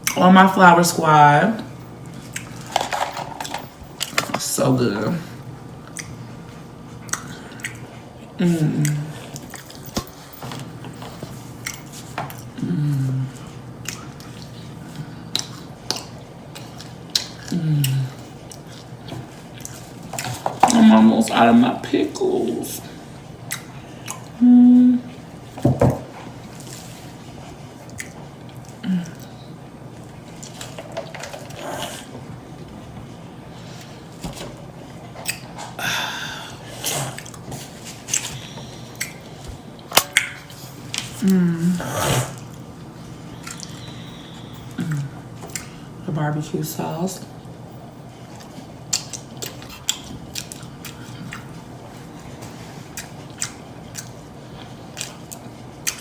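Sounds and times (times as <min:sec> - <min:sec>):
wet chewing and lip-smacking: 0:02.1 - 0:02.7, 0:05.8 - 0:10.3, 0:11.1 - 0:12.6, 0:13.4 - 0:20.4, 0:23.4 - 0:24.4, 0:26.5 - 0:32.2, 0:35.1 - 0:35.8, 0:37.0 - 0:41.2, 0:42.3 - 0:45.8, 0:48.1 - 0:56.0
person humming mm: 0:08.4 - 0:09.2, 0:12.6 - 0:13.4, 0:17.5 - 0:18.2, 0:24.4 - 0:25.1, 0:28.8 - 0:29.3, 0:41.2 - 0:42.4, 0:44.7 - 0:45.2.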